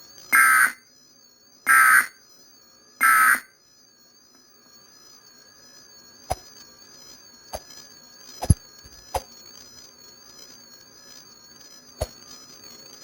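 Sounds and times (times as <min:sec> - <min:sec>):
buzzy digital data signal bursts: 0:04.8 - 0:13.0.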